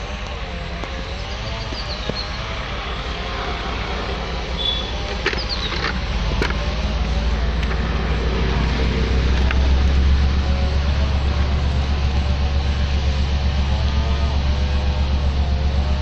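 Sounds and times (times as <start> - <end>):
diesel locomotive engine drone: 0.0 - 16.0
sharp clicks: 4.6 - 8.0.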